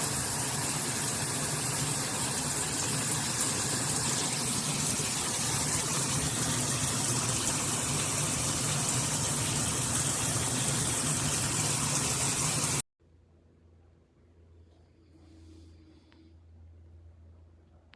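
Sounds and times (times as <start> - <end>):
shower head spraying water: 0.0 - 12.8.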